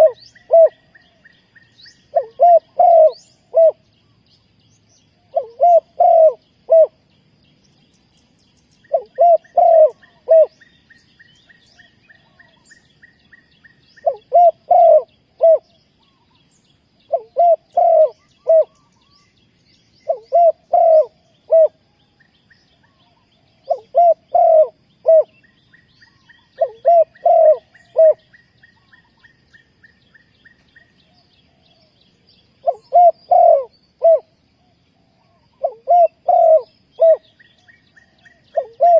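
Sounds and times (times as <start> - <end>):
dove cooing: 0.0 - 1.2, 2.1 - 3.9, 5.2 - 7.0, 8.9 - 10.7, 14.0 - 15.8, 17.1 - 18.9, 20.0 - 21.9, 22.8 - 29.2, 32.6 - 34.4, 35.0 - 38.9
faint high bird chirps: 0.0 - 38.9.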